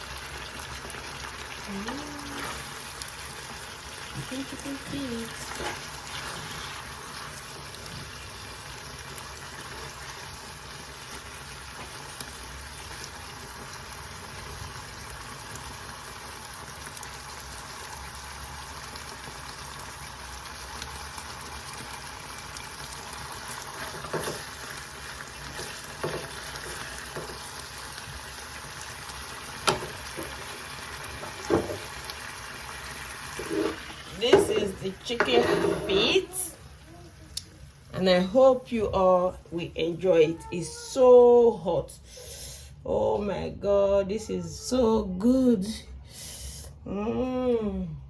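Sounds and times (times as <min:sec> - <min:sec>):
food sizzling in a pan: 0:00.0 - 0:41.3.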